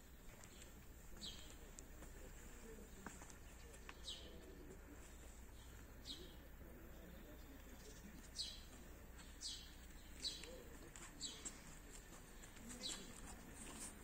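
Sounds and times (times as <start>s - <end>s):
bird chirping: 3.5s - 13.2s.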